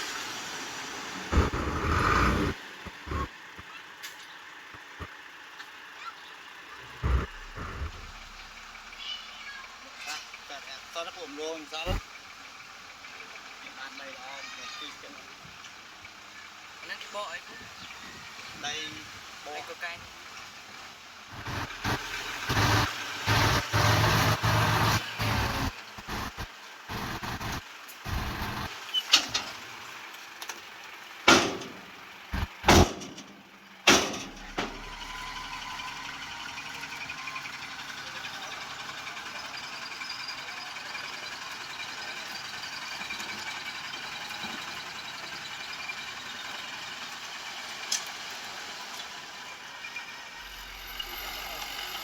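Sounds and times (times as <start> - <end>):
heavy equipment engine running: 0.6 - 4.0, 4.6 - 13.6, 21.2 - 28.8, 31.0 - 47.8
loud sharp bangs: 31.3 - 34.8.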